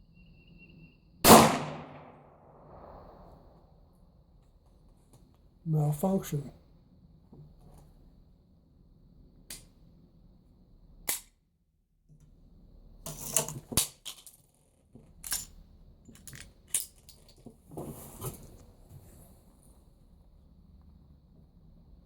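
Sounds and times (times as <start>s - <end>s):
pistol shots: 1.2s - 3.0s.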